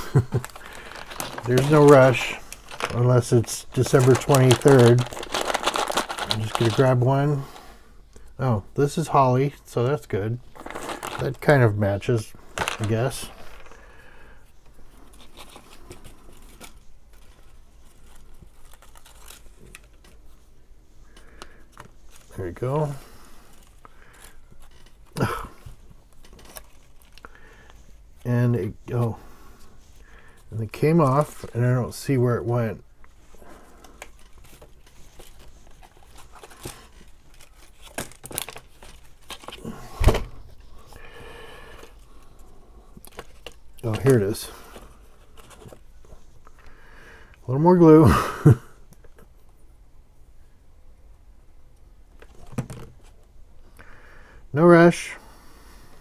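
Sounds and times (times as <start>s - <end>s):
cardstock rustling: 0.0s - 7.7s, 9.9s - 14.0s, 14.9s - 20.5s, 29.9s - 46.3s.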